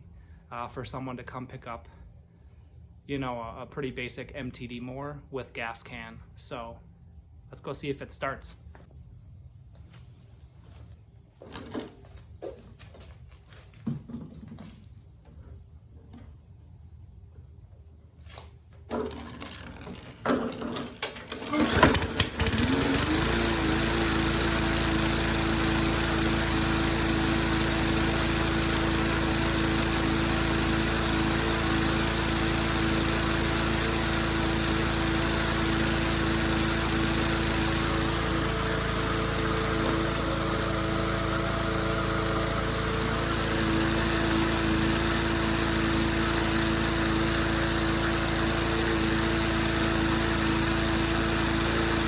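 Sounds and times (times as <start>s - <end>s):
lawn mower engine starting: 18.8s - 52.0s.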